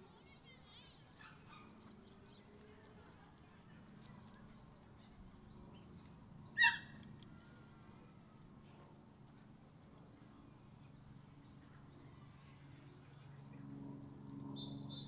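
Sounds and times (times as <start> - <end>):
bird call: 6.6 - 7.0, 14.6 - 15.0.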